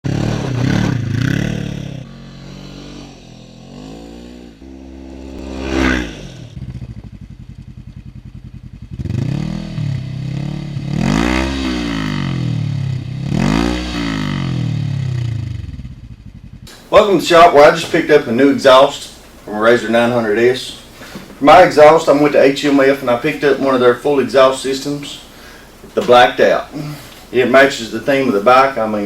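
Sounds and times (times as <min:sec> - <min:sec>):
engine revving: 0:00.0 - 0:20.8.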